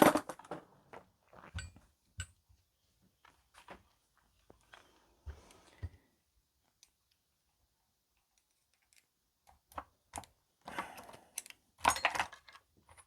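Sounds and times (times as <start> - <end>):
metal parts clicking and clattering: 11.0 - 13.0.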